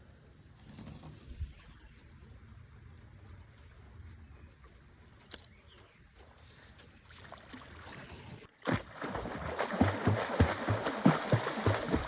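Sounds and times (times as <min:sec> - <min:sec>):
stream water rushing and splashing: 0:07.0 - 0:12.0.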